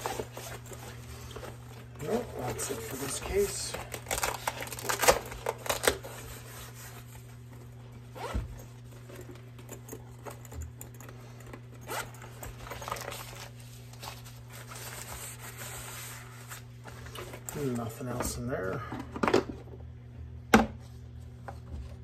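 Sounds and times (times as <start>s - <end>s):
handling rustles: 0.0s - 18.8s
zipper being worked: 8.1s - 8.7s, 11.7s - 13.4s.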